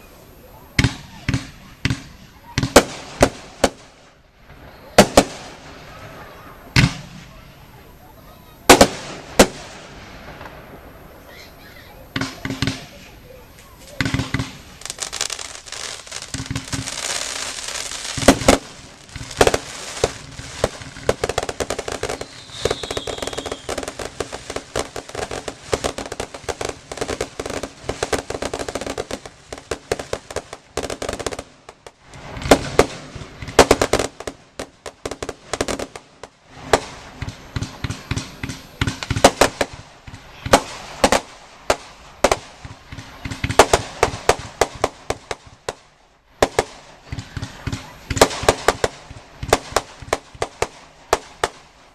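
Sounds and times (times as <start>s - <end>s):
fireworks bangs and crackling: 0.0s - 51.9s
falling whistle: 22.0s - 23.9s.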